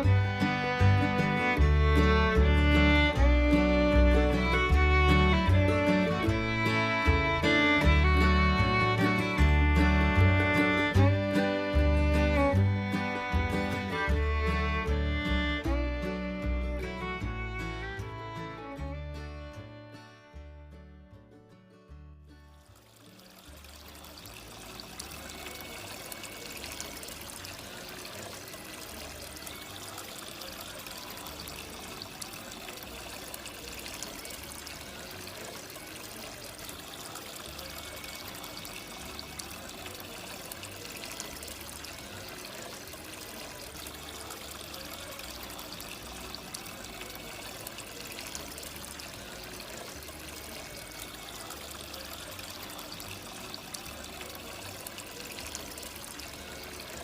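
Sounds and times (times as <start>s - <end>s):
water trickling in fountain: 0.0s - 20.5s, 21.8s - 57.0s.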